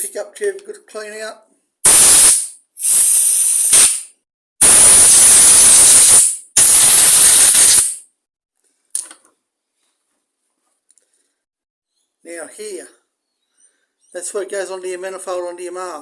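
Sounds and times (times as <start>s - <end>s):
pressurised spray hissing: 1.9s - 4.0s.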